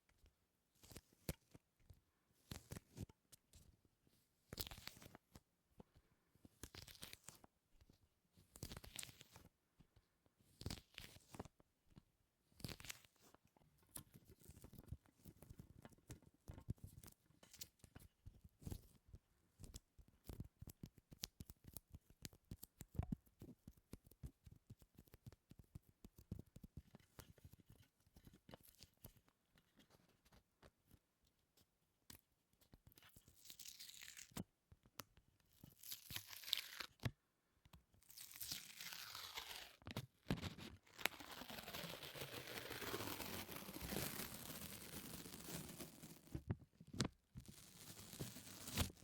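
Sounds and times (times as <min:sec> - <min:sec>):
sticky surface peeling crackle: 0:38.2 - 0:39.8, 0:40.9 - 0:46.4, 0:47.5 - 0:49.0.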